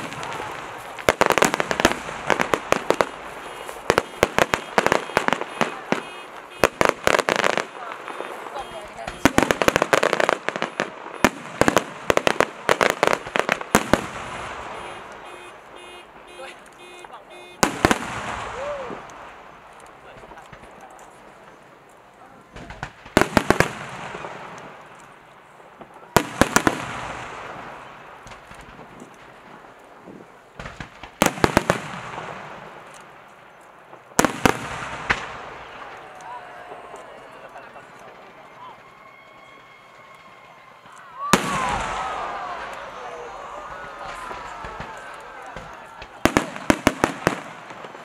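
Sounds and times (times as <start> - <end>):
fireworks bangs and crackles: 0.0 - 48.0.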